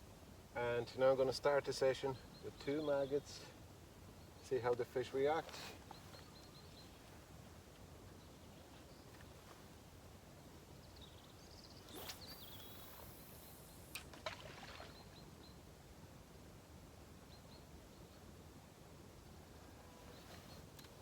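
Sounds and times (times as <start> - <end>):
faint bird chirps: 10.8 - 15.7.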